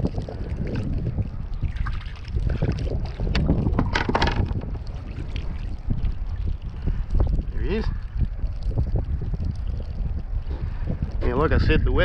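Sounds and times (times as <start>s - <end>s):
wind buffeting microphone: 0.0s - 12.0s
kayak knocks and splashes: 2.6s - 5.4s.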